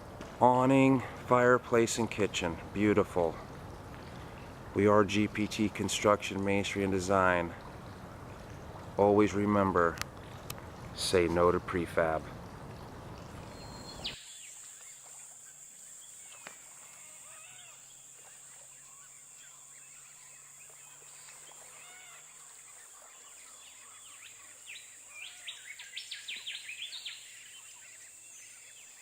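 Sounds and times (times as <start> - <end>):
steady high hiss: 9.0 - 29.0
birds chirping and calling: 12.7 - 14.2, 16.0 - 29.0.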